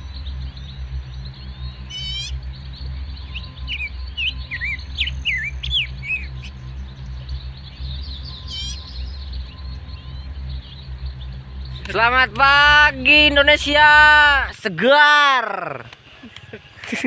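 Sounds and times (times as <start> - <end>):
steady low rumble: 0.0 - 14.8
bird falling trill: 1.9 - 2.4.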